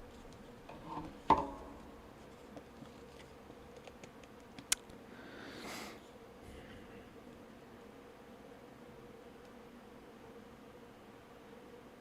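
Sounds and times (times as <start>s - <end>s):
faint steady hum: 0.0s - 12.0s
soft breath: 5.0s - 7.1s.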